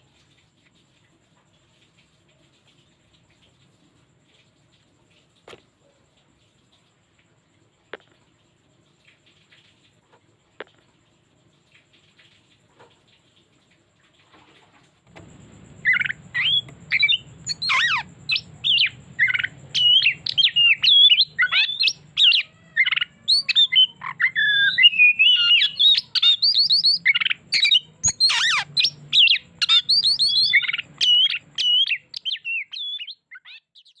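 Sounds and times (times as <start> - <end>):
bird singing whistles and trills: 15.2 - 34.0.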